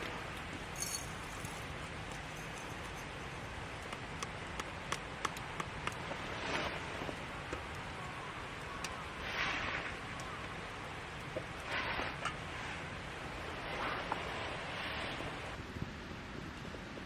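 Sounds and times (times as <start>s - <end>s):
campfire popping: 0.0s - 12.6s
fire hiss: 8.8s - 15.6s.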